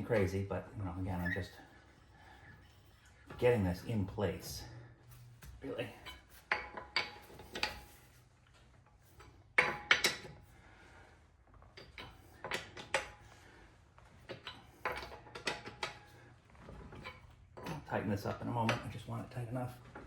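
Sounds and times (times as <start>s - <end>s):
lug wrench clanking on metal: 5.9s - 8.0s, 9.2s - 10.5s, 11.7s - 13.4s, 14.2s - 19.0s.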